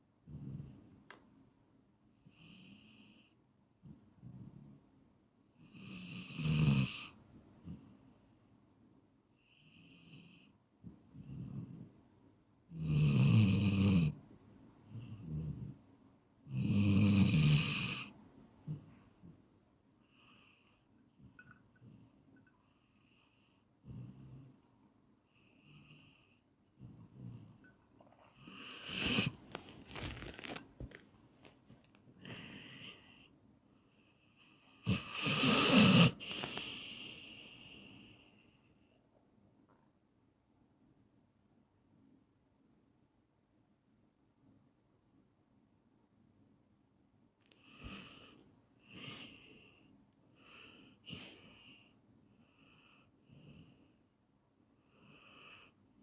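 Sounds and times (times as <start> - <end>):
person snoring: 16.5 - 18.9, 28.4 - 29.5, 34.8 - 38.2
soft breaths: 18.0 - 34.8, 36.1 - 39.1, 47.4 - 54.2.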